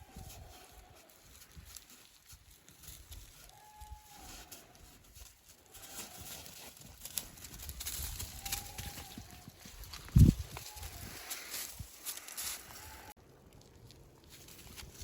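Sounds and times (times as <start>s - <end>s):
goats bleating: 8.2s - 9.6s.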